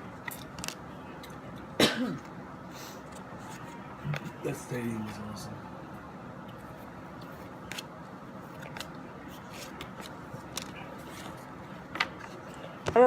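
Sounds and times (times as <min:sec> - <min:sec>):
trading cards rustling and clicking: 0:08.5 - 0:12.6.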